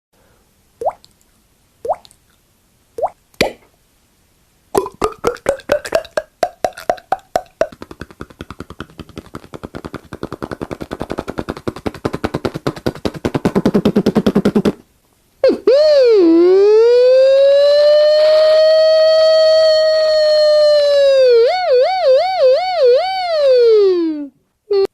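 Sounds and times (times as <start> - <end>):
man making mouth pops: 3.0 - 3.7, 4.8 - 14.8
mouth rattle pulses: 4.8 - 14.8
man imitating siren: 15.4 - 24.9.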